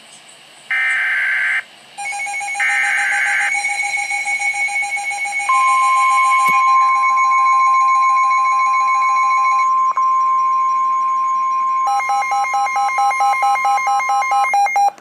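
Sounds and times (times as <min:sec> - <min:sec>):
steady electronic alert tones: 0:00.7 - 0:15.0
warbling digital data burst: 0:05.4 - 0:14.5.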